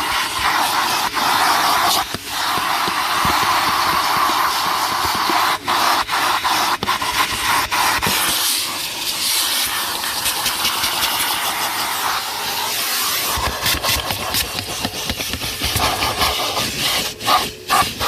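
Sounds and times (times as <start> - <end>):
vacuum cleaner running: 0.0 - 18.0
vacuum nozzle knocking on surfaces: 1.4 - 5.8, 6.6 - 8.4, 13.2 - 18.0.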